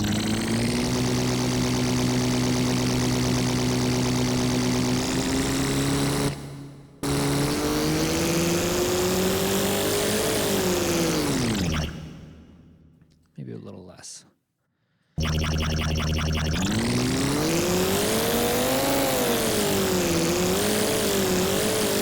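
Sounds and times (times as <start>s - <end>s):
synth spaceship engine drone: 15.2s - 22.0s.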